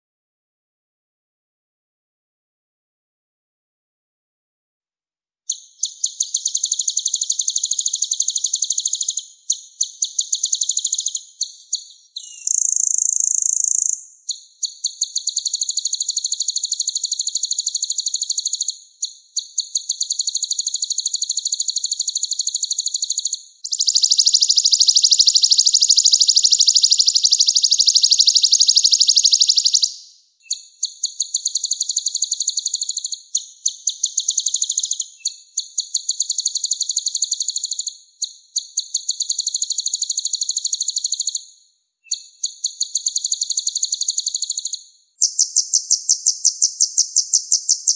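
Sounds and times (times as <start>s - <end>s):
songbird fast rolling trills: 5.5s - 37.9s.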